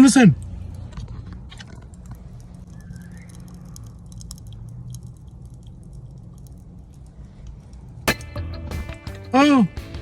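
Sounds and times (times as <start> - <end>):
popping candy crackling: 0.8 - 8.3.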